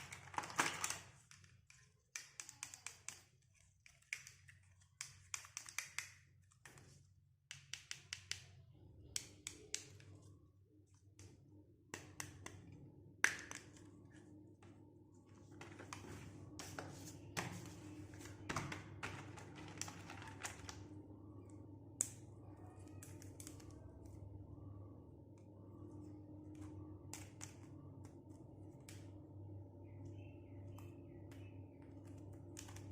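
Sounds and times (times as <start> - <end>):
plastic toy pieces tapping and clicking: 0.0 - 10.2
faint steady hum: 0.0 - 32.9.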